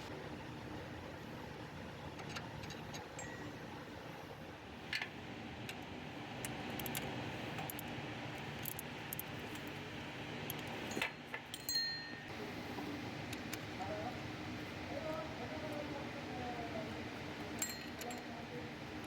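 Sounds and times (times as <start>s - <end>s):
low mechanical hum: 0.0s - 19.0s
sharp metallic clinks: 11.5s - 12.3s, 17.6s - 18.2s.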